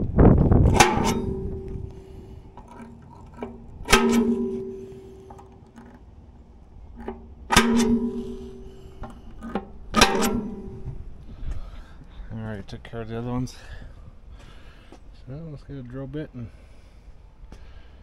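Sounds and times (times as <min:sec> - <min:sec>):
hammer striking metal punch: 0:00.7 - 0:06.0, 0:07.0 - 0:11.1.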